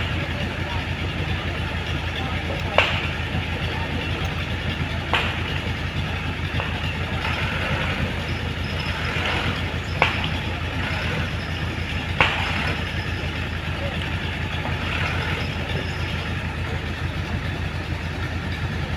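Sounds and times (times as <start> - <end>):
diesel engine running: 0.0 - 18.9
sharp knocks: 5.1 - 5.7, 8.7 - 13.0.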